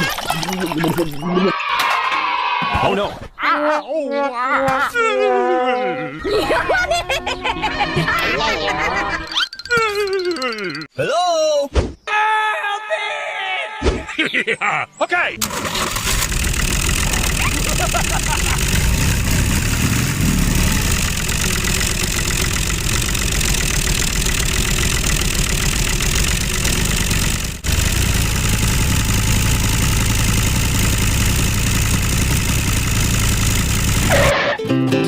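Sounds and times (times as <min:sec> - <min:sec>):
engine running steadily: 0:15.4 - 0:34.3.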